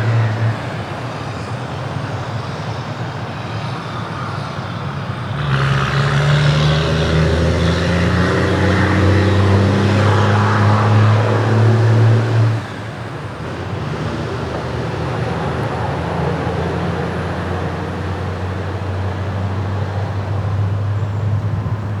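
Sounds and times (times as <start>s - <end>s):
diesel train engine: 0.0s - 6.2s, 6.8s - 22.0s
train rolling by: 0.0s - 6.2s, 12.6s - 22.0s.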